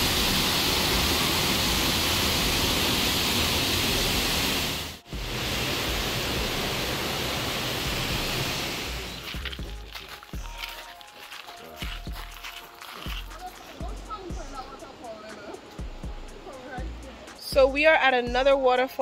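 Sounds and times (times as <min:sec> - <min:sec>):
waterfall rushing: 0:00.0 - 0:15.1.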